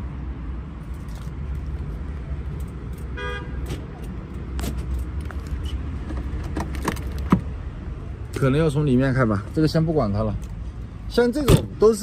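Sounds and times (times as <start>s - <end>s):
car horn toot: 3.2s - 3.7s.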